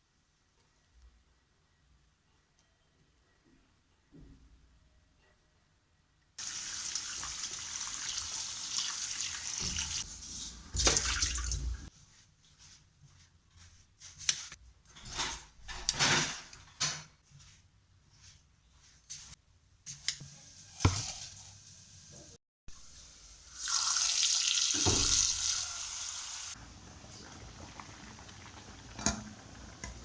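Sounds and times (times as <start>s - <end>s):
water running from a tap: 6.4s - 10.0s, 23.6s - 26.6s.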